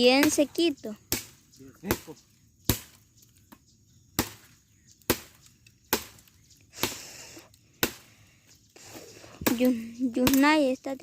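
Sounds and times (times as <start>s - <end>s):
machete chopping wood: 1.1s - 7.1s, 7.8s - 8.1s, 9.4s - 10.6s.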